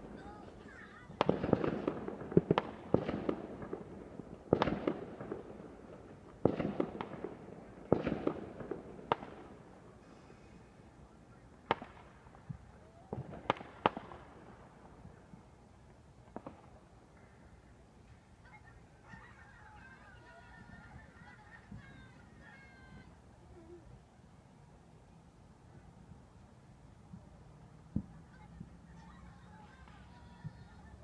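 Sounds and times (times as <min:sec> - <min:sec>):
fireworks bangs: 0:00.0 - 0:10.3, 0:11.5 - 0:23.1
fireworks crackling: 0:00.0 - 0:24.4.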